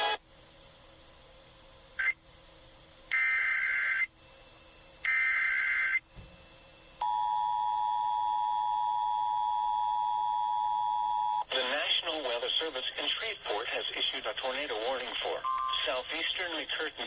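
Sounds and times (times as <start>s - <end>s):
data tone bursts: 15.4s - 16.0s
steady two-tone attention signal: 15.4s - 16.0s.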